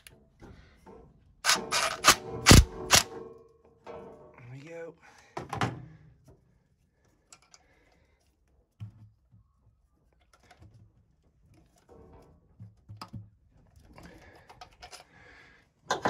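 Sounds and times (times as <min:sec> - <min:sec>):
hand tools clicking on metal: 0:01.5 - 0:03.1.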